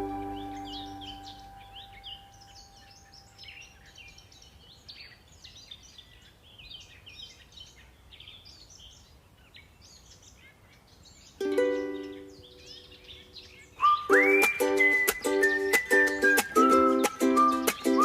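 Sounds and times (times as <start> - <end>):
music: 0.0 - 1.6, 14.0 - 18.0
small birds chirping: 0.0 - 18.0.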